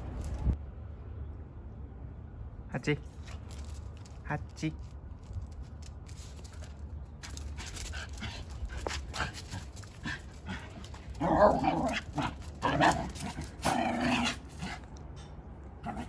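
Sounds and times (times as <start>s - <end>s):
light scuffling: 4.8s - 14.8s.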